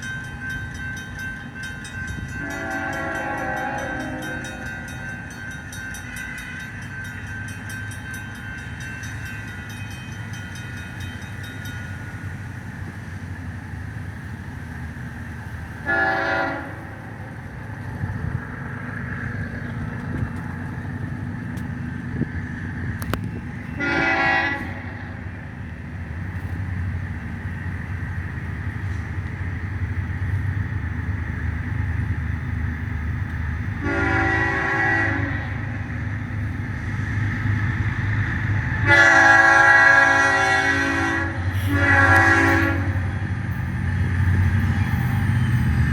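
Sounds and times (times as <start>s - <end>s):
locomotive engine rumble: 0.0s - 45.9s
train air horn blasts: 2.4s - 5.0s, 15.8s - 17.0s, 23.8s - 25.2s, 33.8s - 35.8s, 38.8s - 43.2s.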